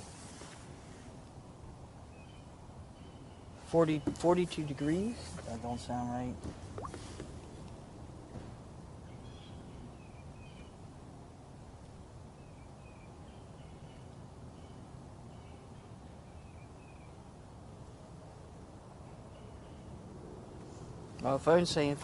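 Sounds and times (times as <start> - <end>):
faint low background hum: 0.0 - 22.0
birds chirping: 2.1 - 6.0.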